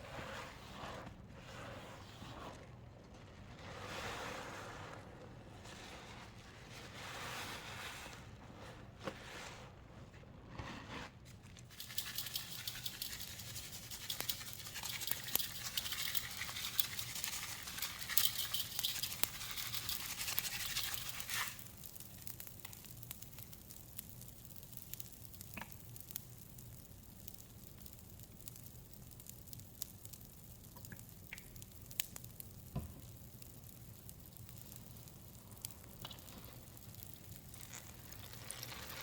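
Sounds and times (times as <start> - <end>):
soap crackling and popping: 11.6 - 39.0.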